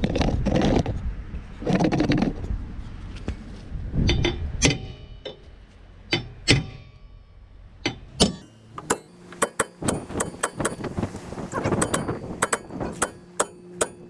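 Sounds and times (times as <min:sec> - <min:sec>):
hammer striking metal: 0:06.1 - 0:07.1, 0:07.8 - 0:14.0.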